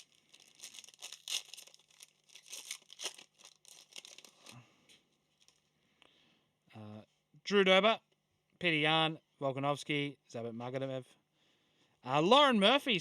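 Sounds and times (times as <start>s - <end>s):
foil card pack tearing and crinkling: 0.0s - 4.6s.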